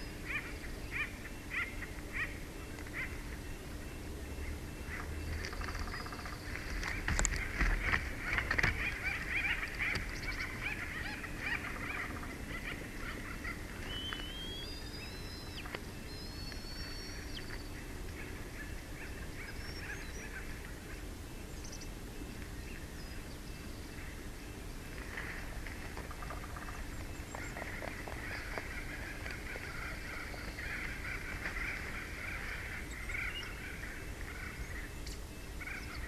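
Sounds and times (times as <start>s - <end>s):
eagles chirping: 0.0s - 20.7s, 23.1s - 36.0s
steady outdoor hiss: 0.0s - 36.0s
small bird whistled notes: 13.9s - 17.4s.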